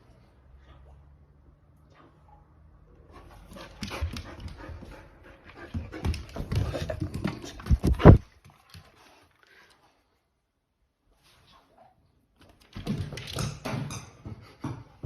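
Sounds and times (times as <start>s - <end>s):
dog panting: 3.0s - 8.2s.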